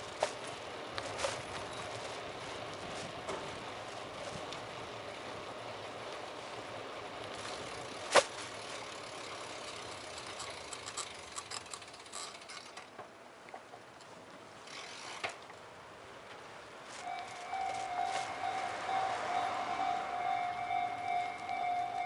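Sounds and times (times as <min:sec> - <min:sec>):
bicycle clicks: 0:00.0 - 0:18.4, 0:19.4 - 0:22.0
road noise hiss: 0:00.0 - 0:22.0.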